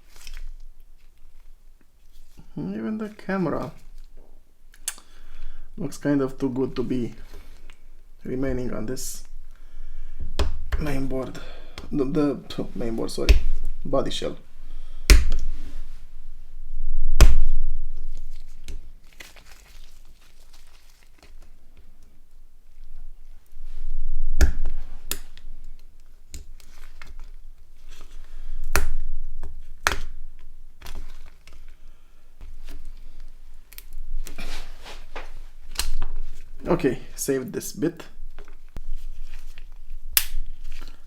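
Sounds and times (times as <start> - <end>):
faint crinkling and scraping: 0.0 - 4.4, 5.2 - 9.6, 18.0 - 24.0, 24.8 - 28.6, 29.5 - 41.0.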